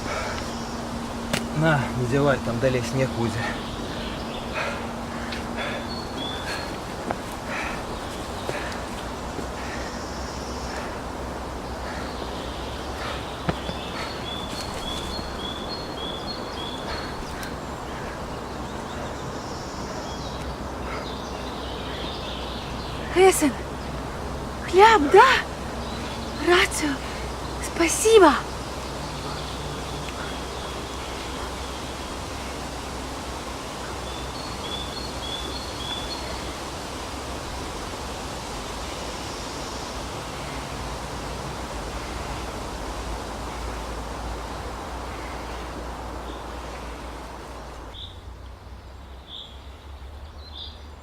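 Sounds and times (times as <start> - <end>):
outdoor background hiss: 0.0 - 51.0
small bird chirping: 2.4 - 32.0.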